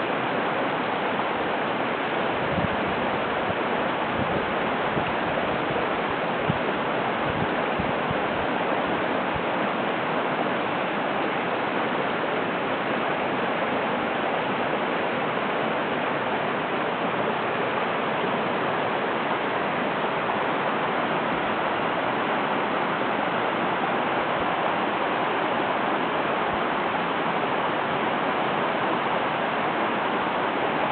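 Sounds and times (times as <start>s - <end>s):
water rushing over rocks: 0.0s - 30.9s.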